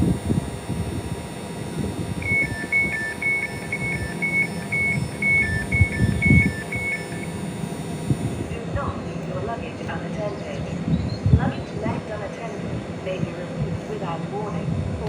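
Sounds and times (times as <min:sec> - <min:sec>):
alternating high and low beeps: 0:00.0 - 0:14.1
wind gusts on microphone: 0:08.0 - 0:15.0.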